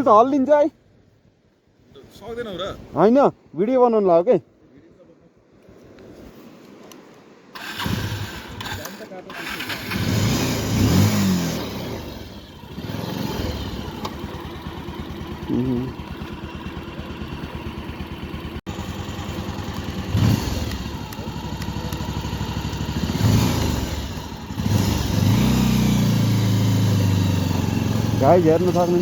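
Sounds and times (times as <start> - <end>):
motorcycle engine running: 9.4 - 29.0.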